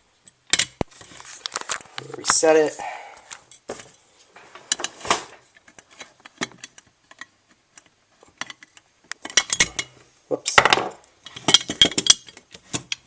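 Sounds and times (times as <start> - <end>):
hardware clicks and knocks: 3.3 - 13.0.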